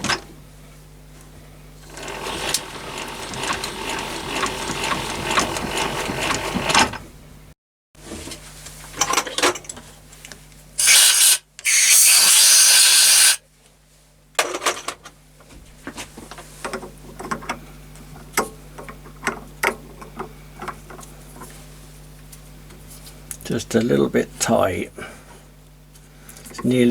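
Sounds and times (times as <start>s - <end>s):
loud hiss blasts: 10.8s - 13.4s.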